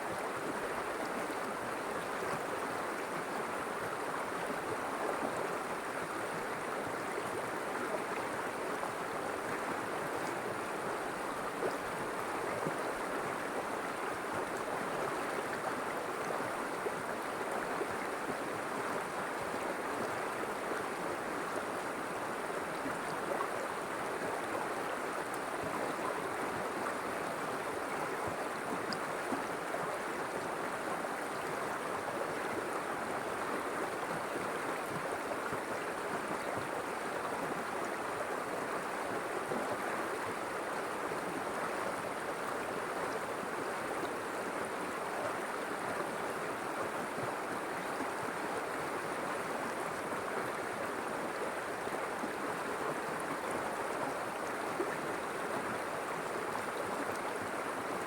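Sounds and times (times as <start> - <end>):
river water rushing over stones: 0.0 - 58.0.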